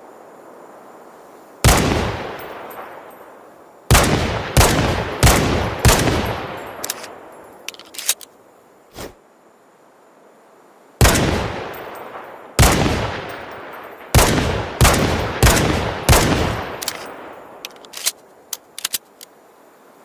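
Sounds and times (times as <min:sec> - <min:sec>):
pistol shots echoing: 0:01.6 - 0:03.1, 0:03.9 - 0:07.2, 0:11.0 - 0:17.6
light metallic clinks: 0:02.2 - 0:03.5, 0:05.0 - 0:08.4, 0:11.6 - 0:14.2, 0:16.5 - 0:19.4.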